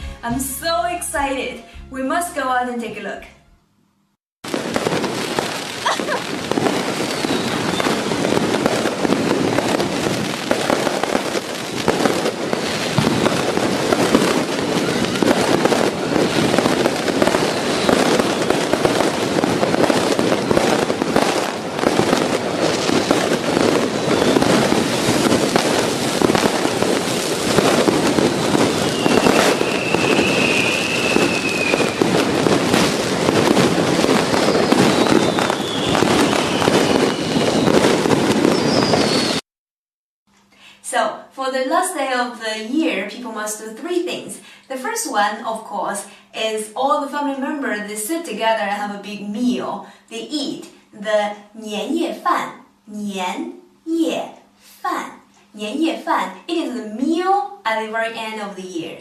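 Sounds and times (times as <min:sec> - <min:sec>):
firecrackers crackling and popping: 0:04.4 - 0:39.4
high firework whistle: 0:04.6 - 0:39.4.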